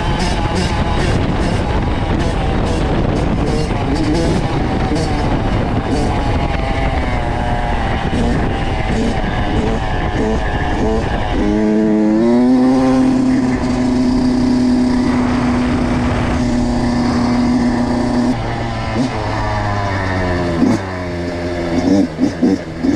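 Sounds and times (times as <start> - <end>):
two-stroke motorcycle engine revving: 0.0 - 22.9.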